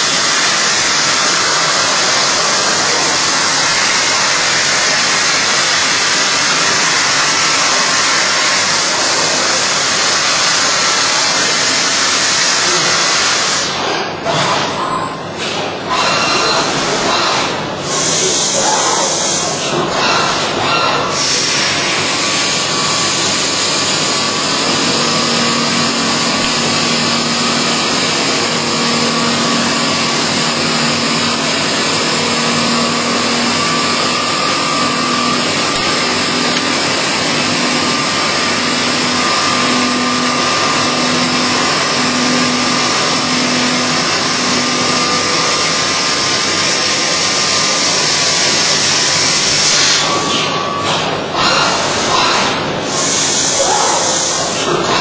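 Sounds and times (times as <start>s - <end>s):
machine cutting with faint whine: 19.4s - 53.5s.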